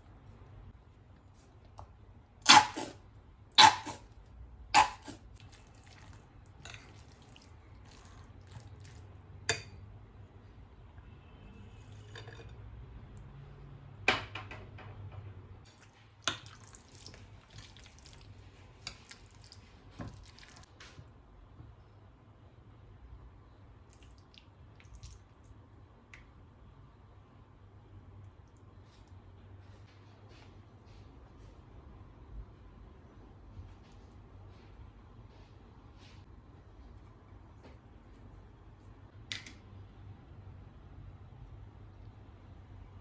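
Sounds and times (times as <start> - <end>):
wet food sounds: 0.0 - 10.7, 15.6 - 21.2, 23.2 - 31.6.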